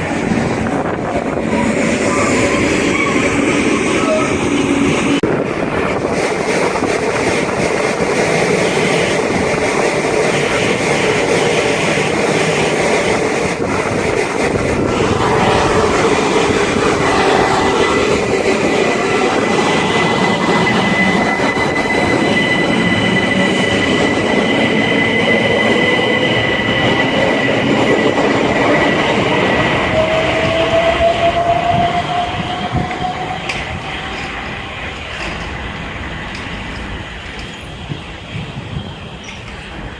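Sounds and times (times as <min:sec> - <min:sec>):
train wheels rumbling on rails: 0:00.0 - 0:39.9
lower whine changing pitch: 0:14.3 - 0:35.0.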